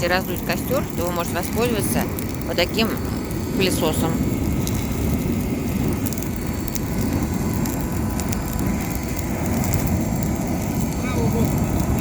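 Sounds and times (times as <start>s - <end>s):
burning wood crackling: 0.0s - 12.0s
rushing of blown flames: 0.0s - 12.0s.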